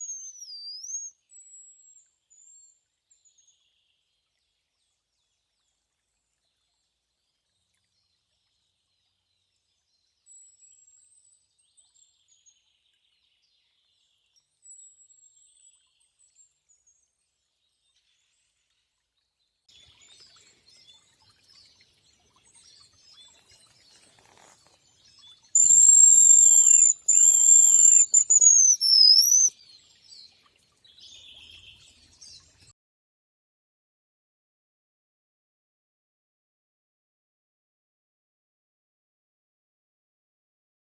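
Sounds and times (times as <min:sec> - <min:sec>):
bird whistling: 0:00.0 - 0:01.1, 0:25.6 - 0:29.5.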